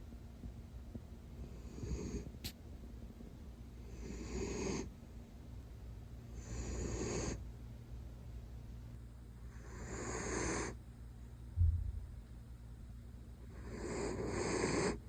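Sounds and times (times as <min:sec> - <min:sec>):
dog snoring: 0:01.4 - 0:02.4, 0:03.8 - 0:04.9, 0:06.3 - 0:07.4, 0:09.4 - 0:10.8, 0:13.4 - 0:15.0.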